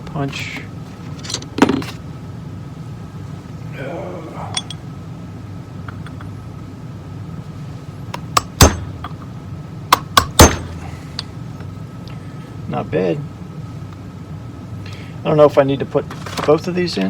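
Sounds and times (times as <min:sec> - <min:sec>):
hammer hitting metal punch: 0:08.2 - 0:09.2, 0:09.9 - 0:10.9.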